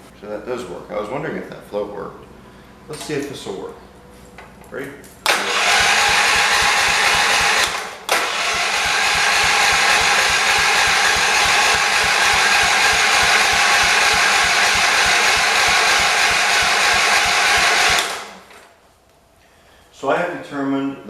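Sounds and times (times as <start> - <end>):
engine cranking without firing: 5.3 - 18.5.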